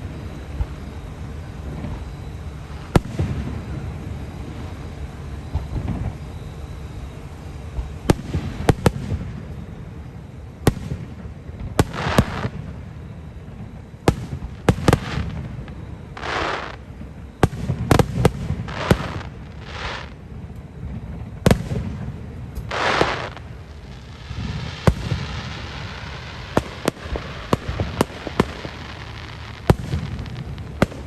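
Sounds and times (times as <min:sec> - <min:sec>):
fireworks bangs: 0:00.0 - 0:04.9, 0:05.5 - 0:06.2, 0:07.2 - 0:09.5, 0:10.6 - 0:12.9, 0:13.5 - 0:31.0
fireworks hissing rush: 0:10.7 - 0:12.9, 0:14.0 - 0:20.3, 0:21.4 - 0:31.0.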